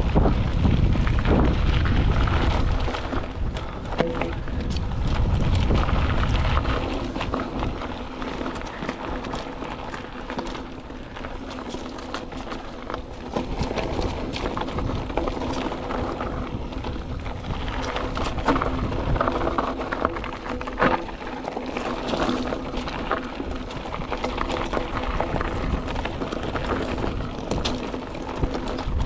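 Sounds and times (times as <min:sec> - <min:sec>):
bike clicks and rattles: 0:00.0 - 0:29.0
tyres rolling over dirt trail: 0:00.0 - 0:29.0
wind buffeting microphone: 0:00.0 - 0:29.0.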